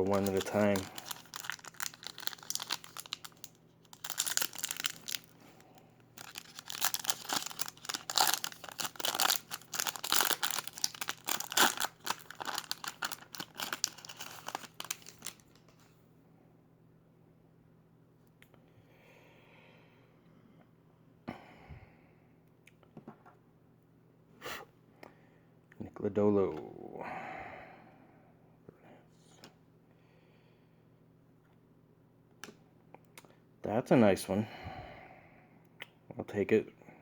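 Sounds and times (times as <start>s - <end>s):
packaging torn and crinkled: 0.0s - 5.4s, 6.2s - 15.6s.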